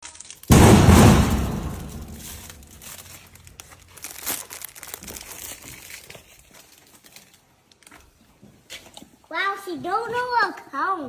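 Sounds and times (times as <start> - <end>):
wrapper crinkling: 0.0 - 8.2.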